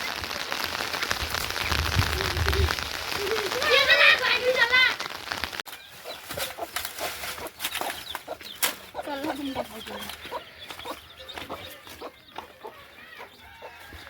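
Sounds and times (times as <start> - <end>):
chickens clucking: 5.8 - 14.0.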